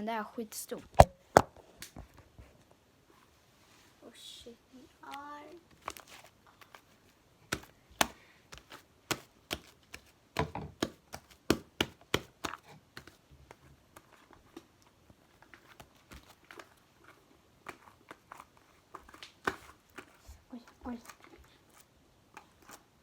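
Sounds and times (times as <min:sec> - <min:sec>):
slime kneaded by hand: 0:05.0 - 0:23.0.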